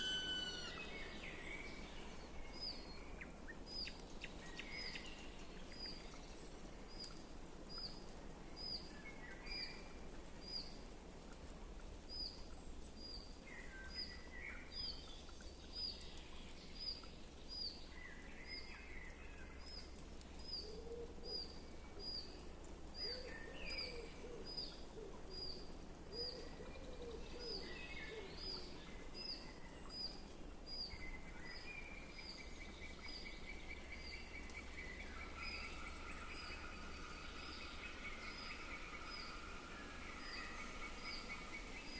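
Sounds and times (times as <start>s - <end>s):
bird repeating high slurred note: 0.0s - 1.5s
birds singing brief phrases: 0.0s - 2.2s
low warbling bird call: 0.0s - 2.5s.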